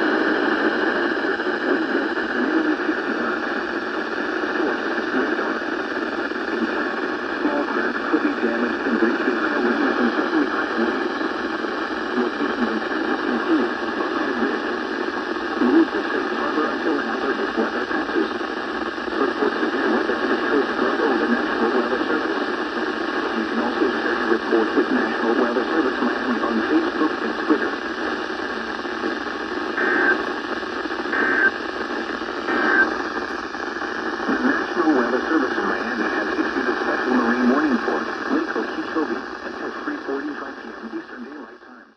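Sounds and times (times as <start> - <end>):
faint voice over radio: 0.0 - 41.9
radio static hiss: 0.0 - 41.9
two-tone data bursts: 29.8 - 30.3, 31.0 - 31.7, 32.3 - 35.2.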